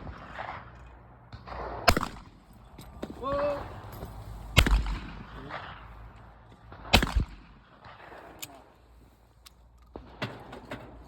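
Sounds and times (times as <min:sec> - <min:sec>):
shotgun shot: 0:01.3 - 0:02.4, 0:04.6 - 0:05.9, 0:06.7 - 0:08.1.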